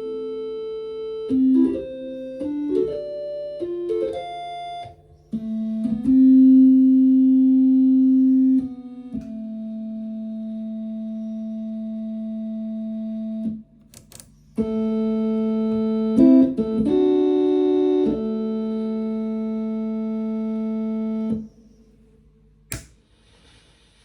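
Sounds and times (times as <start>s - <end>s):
combo organ playing sustained chords: 0.0s - 13.8s, 14.4s - 22.0s
short clicks: 13.8s - 14.6s, 22.7s - 23.0s.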